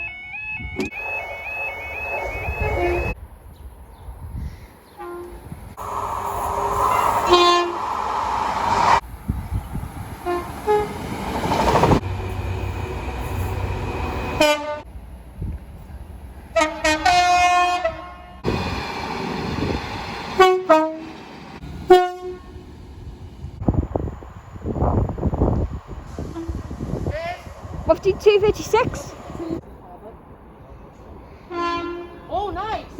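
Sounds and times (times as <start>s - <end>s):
passing trains: 0.0s - 32.9s
train horn blasts: 2.1s - 3.2s, 5.0s - 6.0s, 6.9s - 7.9s, 10.2s - 11.0s, 14.4s - 14.9s, 16.6s - 18.4s, 20.4s - 21.1s, 21.9s - 22.7s, 31.5s - 32.3s.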